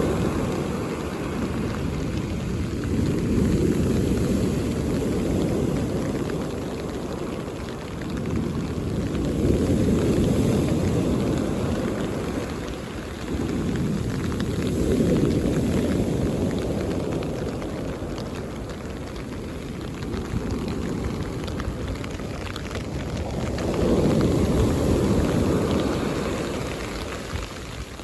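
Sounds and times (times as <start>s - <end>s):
sea waves breaking on beach: 0.0s - 28.0s.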